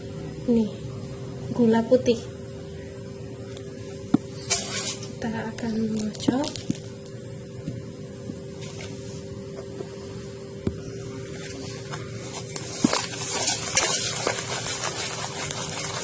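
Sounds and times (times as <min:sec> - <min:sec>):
steady low hum: 0:00.0 - 0:16.0
fork beating eggs in a bowl: 0:12.4 - 0:16.0.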